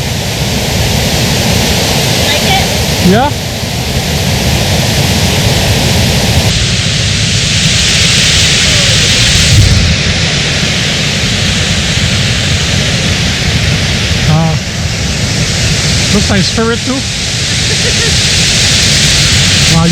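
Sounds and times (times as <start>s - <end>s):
waterfall roaring: 0.0s - 19.9s.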